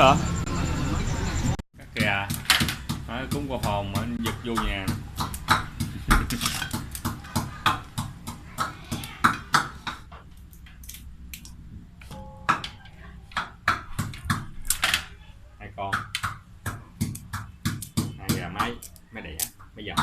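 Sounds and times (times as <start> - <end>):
voices: 0.0 - 2.3
household items clicking and knocking: 1.9 - 15.1.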